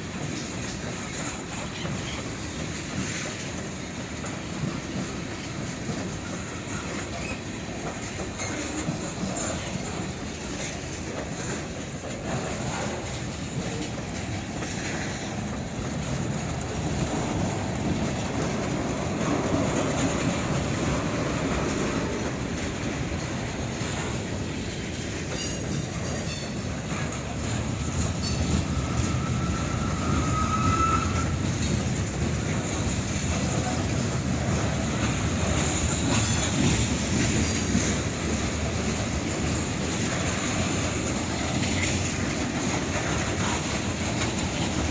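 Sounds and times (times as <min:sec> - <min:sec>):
freight train wheels on rails: 0:00.0 - 0:44.9
rising wheel squeal: 0:28.0 - 0:32.0.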